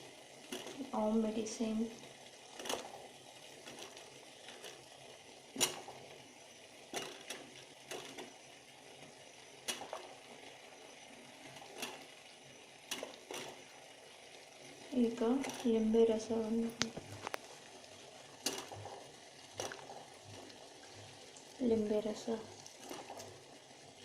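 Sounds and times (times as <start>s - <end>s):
utensils clicking on a pot: 0.5s - 1.0s, 5.6s - 6.0s, 15.0s - 16.0s, 18.4s - 21.5s.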